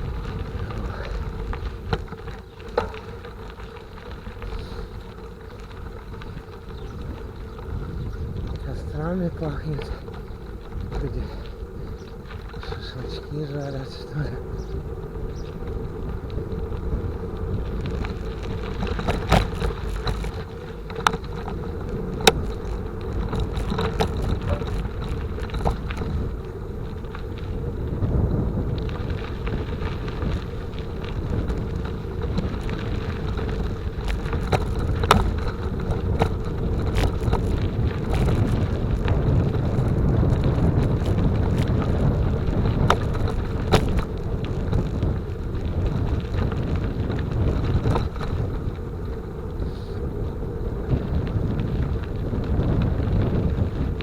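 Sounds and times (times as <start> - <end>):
wind on microphone: 0.0 - 3.5, 4.1 - 54.0
bicycle tyres rumbling: 0.0 - 54.0
bike clicking and rattling: 0.0 - 54.0.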